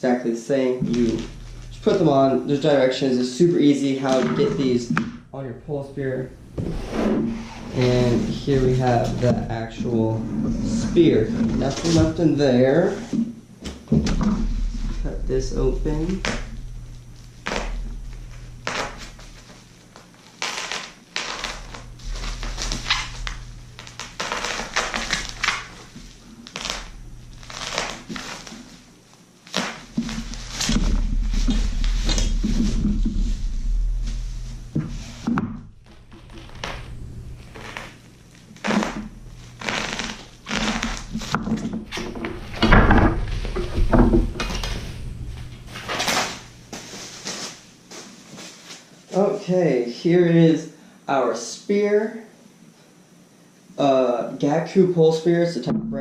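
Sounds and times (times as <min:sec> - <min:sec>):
scrapes knocks and thuds: 0:06.5 - 0:19.6, 0:29.8 - 0:37.7, 0:38.8 - 0:47.2
wrapping crinkling and rustling: 0:14.4 - 0:42.7, 0:43.3 - 0:49.4
packaging being torn: 0:20.2 - 0:28.7.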